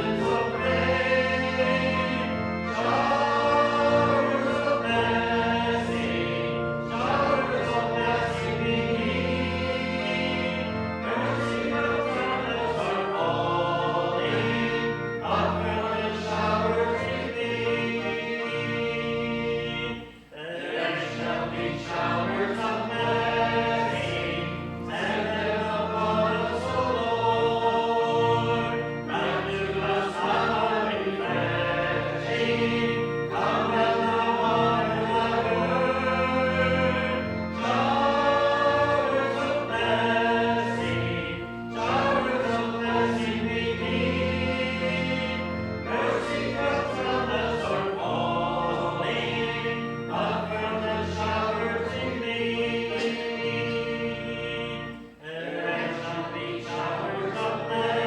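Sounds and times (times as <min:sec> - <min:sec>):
congregation singing a hymn: 0:00.0 - 0:58.0
sustained accompaniment: 0:00.0 - 0:58.0.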